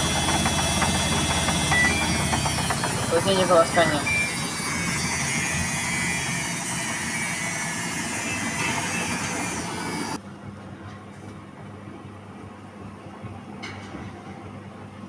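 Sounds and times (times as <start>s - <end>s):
low machine hum: 0.0s - 10.2s
water rushing into washing machine: 0.0s - 10.2s.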